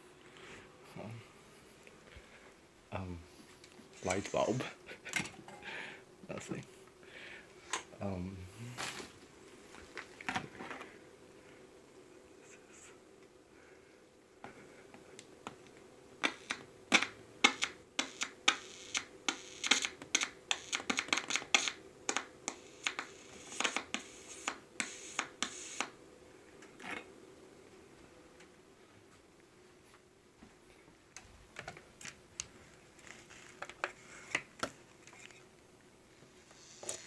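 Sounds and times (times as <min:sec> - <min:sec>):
faint electrical hum: 0:00.0 - 0:37.0
sharp clicks and crackles: 0:15.2 - 0:26.0.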